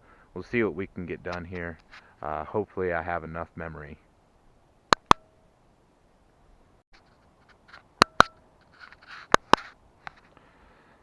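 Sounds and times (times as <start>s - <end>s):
low hiss: 0.0s - 11.0s
soft scrapes: 8.6s - 10.4s.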